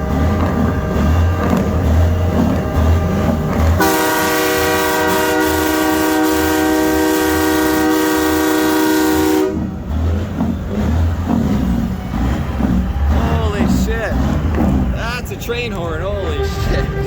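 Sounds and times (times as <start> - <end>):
train horn blast: 0.0 - 9.9, 16.1 - 17.0
low engine rumble: 0.0 - 17.0.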